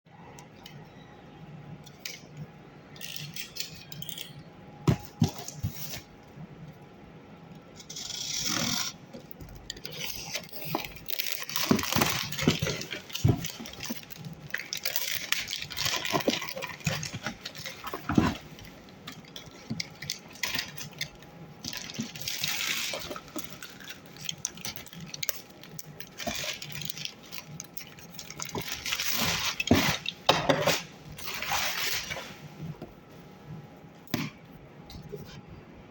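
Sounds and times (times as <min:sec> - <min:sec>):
packaging rustling and crinkling: 0:09.4 - 0:33.3.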